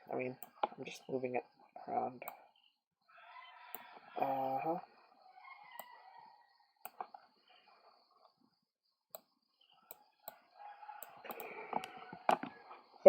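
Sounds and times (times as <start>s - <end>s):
computer mouse clicks: 0.4s - 0.8s, 3.7s - 4.3s, 6.8s - 7.2s, 9.9s - 10.4s, 11.0s - 12.6s.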